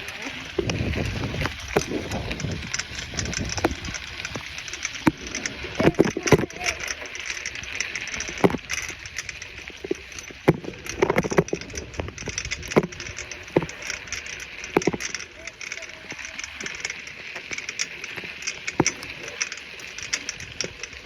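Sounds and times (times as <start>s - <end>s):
bicycle knocks and rattles: 0.0s - 21.0s
bicycle tyres hissing: 0.0s - 21.0s.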